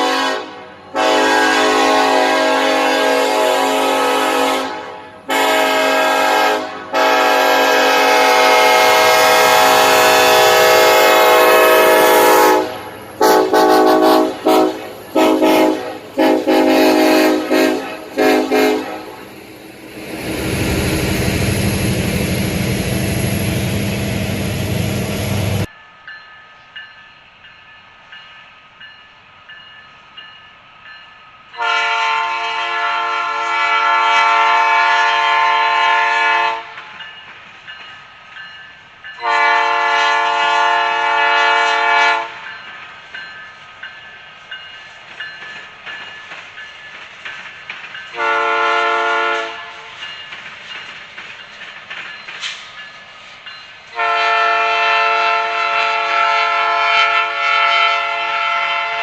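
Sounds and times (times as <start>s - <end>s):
train air horn blasts: 0.0s - 19.3s, 31.5s - 36.9s, 39.2s - 42.5s, 48.1s - 50.0s, 53.9s - 59.0s
train noise: 0.0s - 59.0s.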